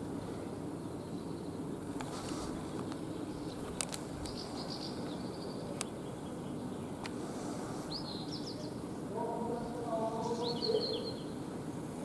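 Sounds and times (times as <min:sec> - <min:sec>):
outdoor background noise: 0:00.0 - 0:12.0
swallows twittering: 0:04.2 - 0:07.0, 0:07.9 - 0:08.8, 0:09.5 - 0:11.4.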